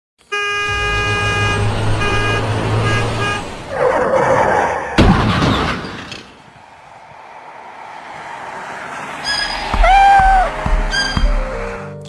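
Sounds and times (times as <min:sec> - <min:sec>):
vehicle horn honking: 0:00.2 - 0:03.8
low engine rumble: 0:00.5 - 0:03.9
loud crash: 0:05.0 - 0:06.6.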